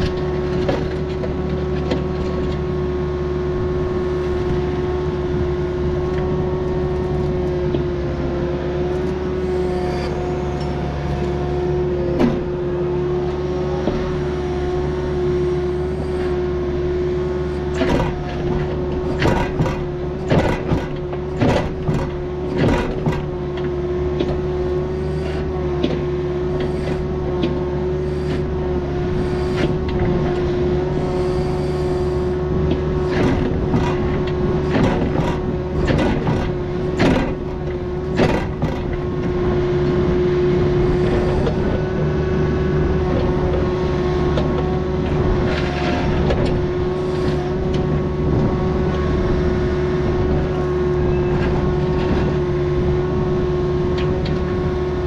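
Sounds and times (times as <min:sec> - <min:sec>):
diesel machine engine whining: 0:00.0 - 0:55.0
sharp knocks and clanks: 0:17.7 - 0:23.3, 0:32.7 - 0:39.3.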